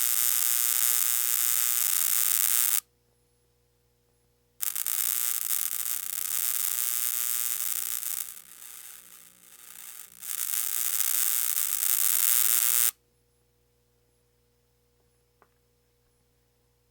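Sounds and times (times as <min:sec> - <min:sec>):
electrical arcing buzz: 0:00.0 - 0:02.8, 0:04.6 - 0:13.0
faint electrical hum: 0:00.0 - 0:16.9.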